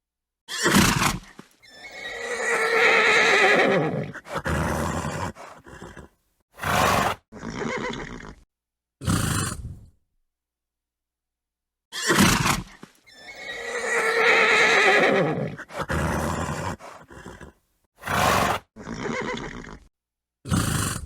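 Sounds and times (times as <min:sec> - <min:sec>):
horse whinnying: 0:00.5 - 0:08.4, 0:11.9 - 0:19.9
horse snorting: 0:00.6 - 0:08.4, 0:09.0 - 0:09.8, 0:12.1 - 0:19.9, 0:20.5 - 0:21.0.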